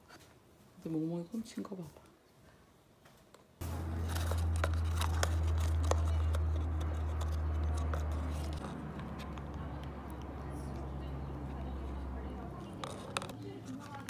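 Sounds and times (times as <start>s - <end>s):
cockatoo crunching with beak: 3.6s - 14.0s
steady low hum: 3.6s - 14.0s.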